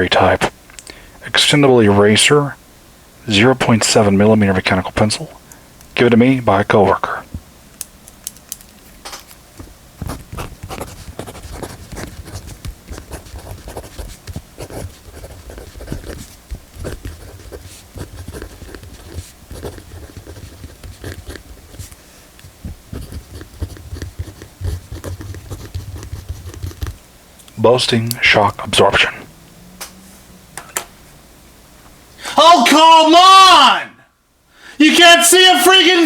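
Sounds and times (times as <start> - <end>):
pencil scratching on paper: 10.0 - 27.0.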